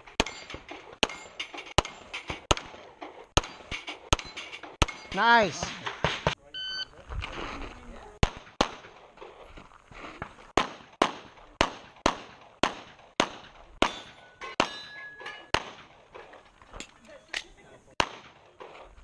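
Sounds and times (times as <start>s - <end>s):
rapid handgun shots: 0.2s - 6.4s, 8.2s - 9.4s, 10.6s - 14.8s, 15.5s - 16.3s, 18.0s - 19.0s
steel targets ringing: 13.8s - 15.5s.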